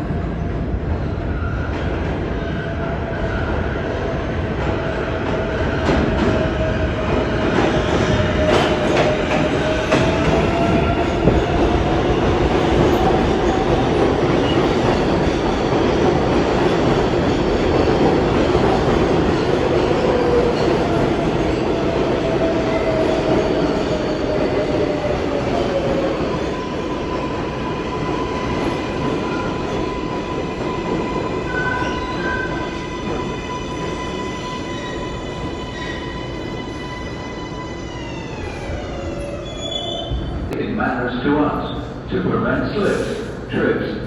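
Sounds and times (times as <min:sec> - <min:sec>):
subway train rumbling: 0:00.0 - 0:44.0.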